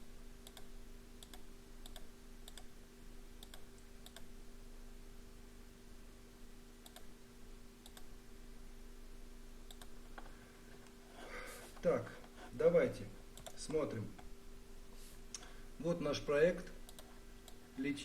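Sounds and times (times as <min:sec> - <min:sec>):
low electrical hum: 0:00.0 - 0:18.0
computer mouse clicks: 0:00.4 - 0:02.7, 0:03.4 - 0:04.3, 0:06.8 - 0:07.1, 0:07.8 - 0:08.1, 0:09.7 - 0:11.0, 0:13.4 - 0:14.3, 0:16.8 - 0:17.6.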